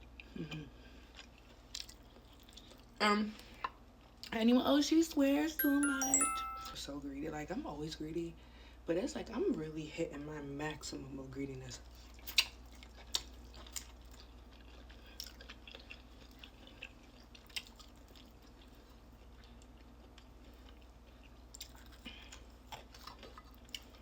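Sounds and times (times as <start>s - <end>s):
chewing crunchy food: 0.0s - 4.4s, 11.8s - 24.0s.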